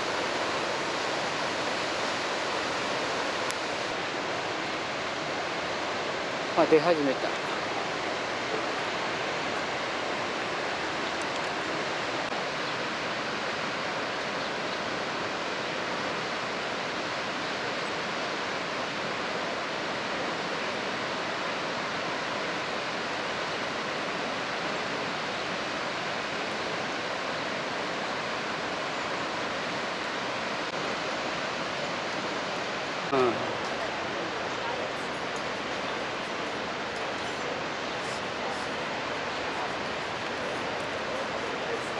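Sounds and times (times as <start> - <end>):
waterfall roar: 0.0 - 41.9.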